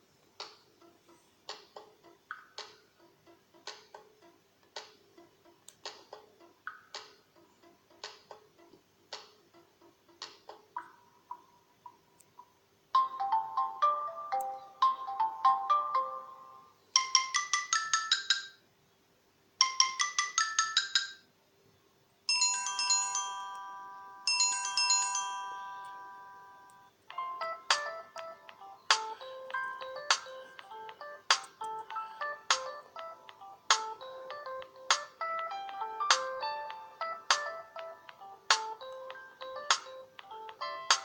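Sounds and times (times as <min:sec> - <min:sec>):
soft ticking clicks: 0:00.2 - 0:12.6, 0:26.6 - 0:41.0
bright plinking ringtone tune: 0:13.0 - 0:18.6, 0:19.6 - 0:21.2, 0:22.3 - 0:41.0
chime tones: 0:22.3 - 0:26.9.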